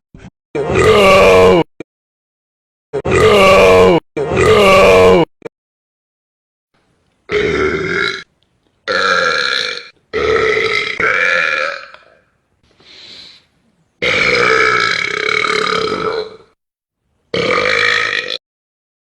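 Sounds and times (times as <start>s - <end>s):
man burping loudly: 0.6s - 1.7s, 3.0s - 5.3s, 7.3s - 8.3s, 8.9s - 12.3s, 14.0s - 16.6s, 17.3s - 18.4s
faint breath: 12.6s - 13.9s.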